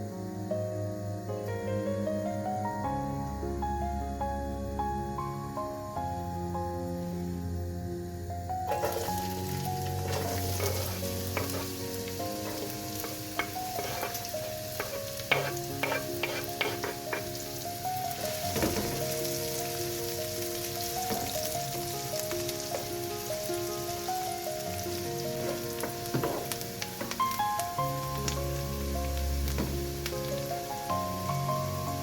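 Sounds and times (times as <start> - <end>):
food sizzling in a pan: 8.2 - 32.0
utensil scraping a pan: 8.7 - 17.4, 25.4 - 26.6.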